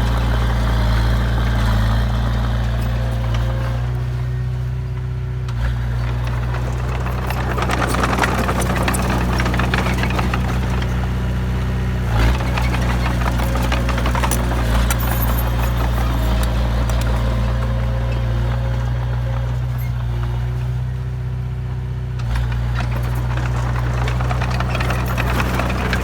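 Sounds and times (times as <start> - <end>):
heavy vehicle engine running: 0.0 - 26.0
rattling clatter of metal: 5.1 - 21.0, 22.2 - 26.0.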